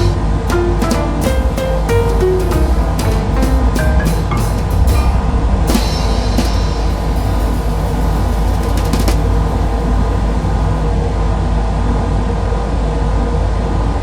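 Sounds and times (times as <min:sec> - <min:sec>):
ceiling fan humming: 0:00.0 - 0:10.9.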